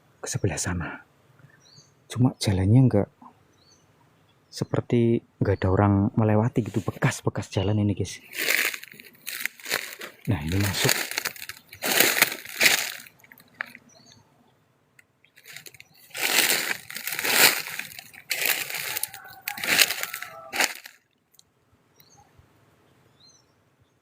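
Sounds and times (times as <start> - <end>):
dry leaves rustling and crunching: 8.2 - 13.8, 15.4 - 21.0.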